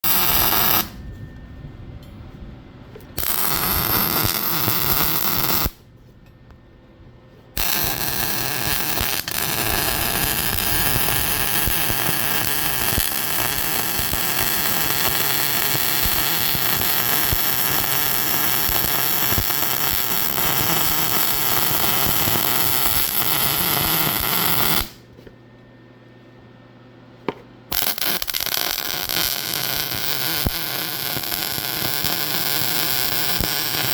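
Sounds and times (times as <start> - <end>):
welding arc crackling and hissing: 0.0 - 1.0, 3.2 - 5.8, 7.6 - 25.0, 27.7 - 33.9.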